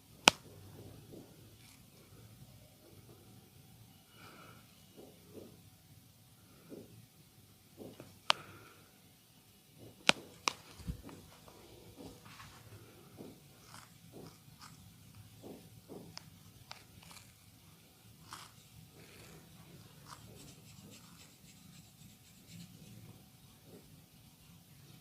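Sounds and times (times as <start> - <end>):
low room hum: 0.0 - 25.0
hands rubbing on body: 19.9 - 23.0.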